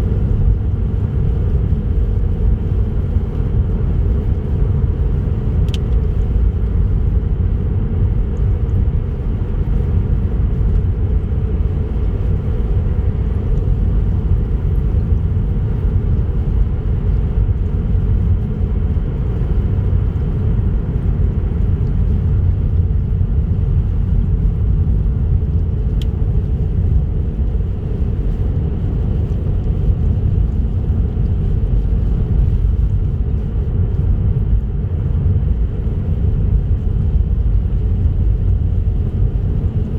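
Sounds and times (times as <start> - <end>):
car driving on highway: 0.0 - 39.9.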